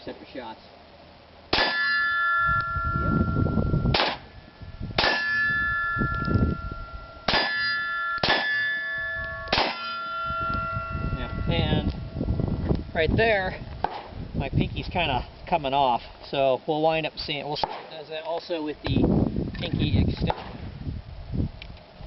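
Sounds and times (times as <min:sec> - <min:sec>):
pistol shots: 0:01.5 - 0:01.8, 0:03.9 - 0:04.2, 0:05.0 - 0:05.3, 0:07.3 - 0:07.6, 0:08.2 - 0:08.6, 0:09.5 - 0:10.0
steel target ringing: 0:01.5 - 0:12.6
wind rumbling on microphone: 0:02.1 - 0:16.2, 0:18.7 - 0:22.0.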